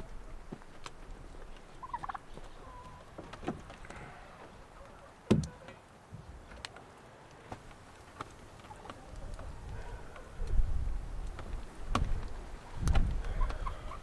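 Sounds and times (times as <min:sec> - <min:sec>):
turkey gobbling: 0:01.8 - 0:03.1, 0:08.5 - 0:10.5, 0:12.6 - 0:14.0.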